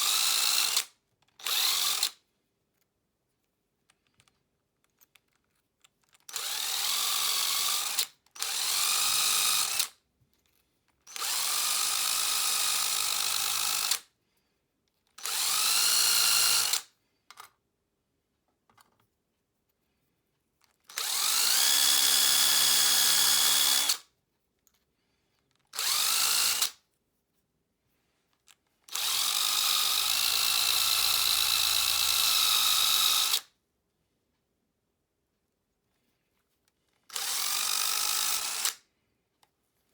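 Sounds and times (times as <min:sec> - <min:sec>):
power tool motor whine: 0:25.8 - 0:26.7.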